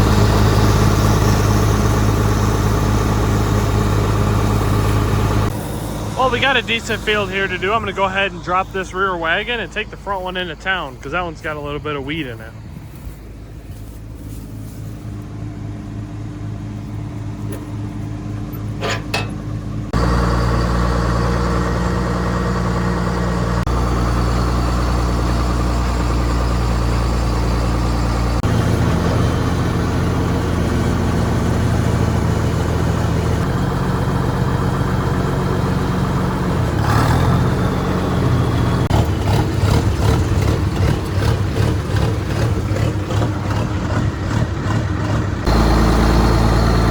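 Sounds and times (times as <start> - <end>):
diesel machinery engine running: 0.0 - 46.9
short clatter: 18.5 - 19.5.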